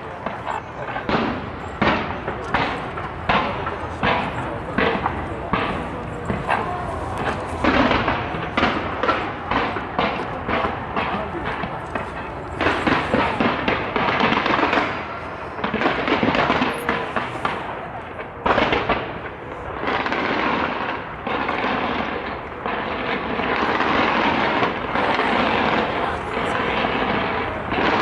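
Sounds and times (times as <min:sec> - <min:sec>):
fireworks bursting and crackling: 0:00.0 - 0:28.0.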